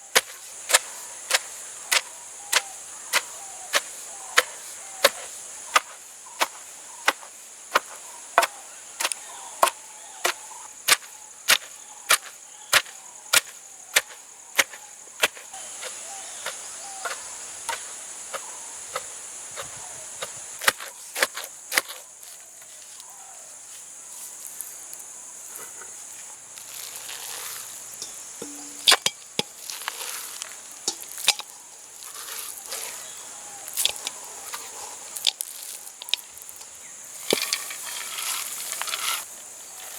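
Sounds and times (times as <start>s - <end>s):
knife chopping on wooden board: 0.2s - 15.4s
knocks and handling sounds: 26.6s - 39.3s.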